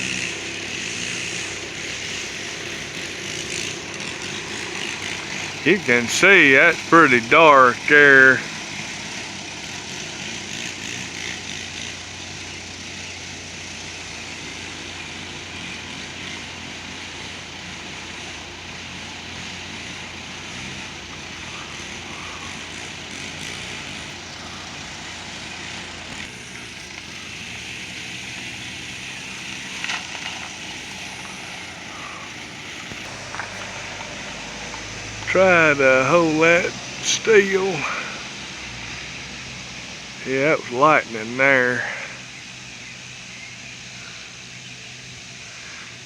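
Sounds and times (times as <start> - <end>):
outdoor background noise: 0.0 - 46.0
steady engine drone: 0.0 - 46.0.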